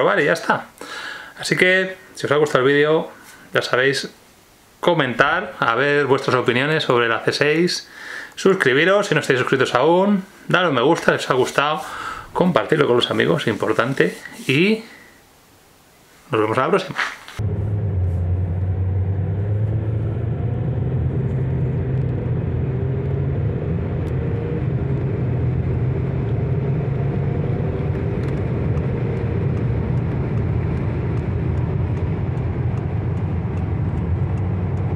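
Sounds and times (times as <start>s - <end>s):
diesel engine droning: 17.4s - 34.9s.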